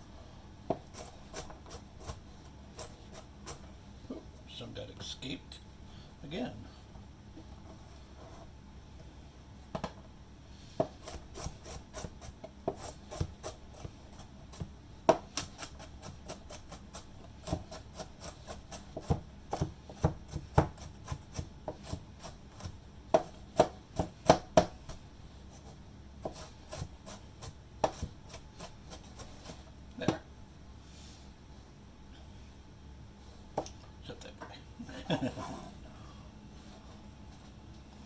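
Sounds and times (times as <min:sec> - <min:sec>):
knife chopping on cutting board: 0:10.7 - 0:25.0, 0:26.2 - 0:30.3.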